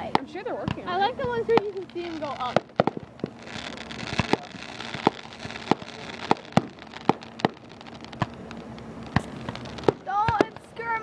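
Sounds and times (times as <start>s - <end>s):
fireworks bangs: 0.0s - 11.0s
fireworks crackling hiss: 0.0s - 11.0s.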